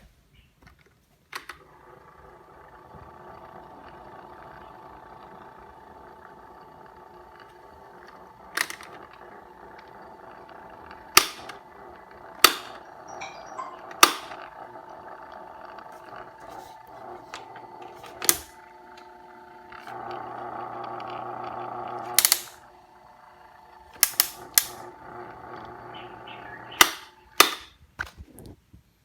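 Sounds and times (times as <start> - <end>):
electric fan motor humming: 1.5 - 28.2
fan switch click: 11.1 - 11.6, 12.4 - 12.8, 22.1 - 22.6, 24.0 - 24.9, 26.7 - 27.7
loud sharp clicks: 11.1 - 11.6, 12.4 - 12.8, 22.0 - 22.6, 23.9 - 24.9, 26.7 - 28.1.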